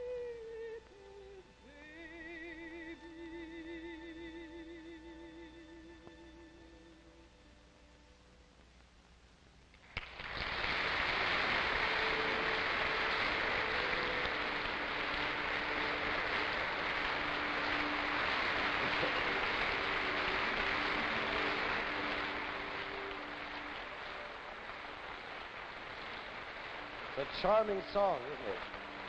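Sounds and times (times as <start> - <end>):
audience applauding: 9.8 - 29.0.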